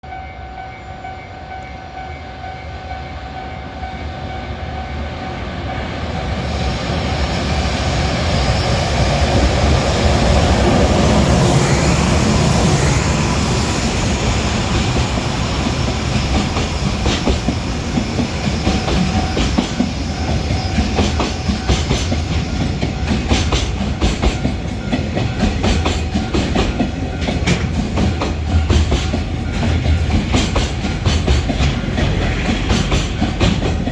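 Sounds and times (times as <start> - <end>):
electric locomotive passing: 0.0 - 33.9
train wheels clacking on rail joints: 8.5 - 33.9
level-crossing warning bell: 14.0 - 31.7.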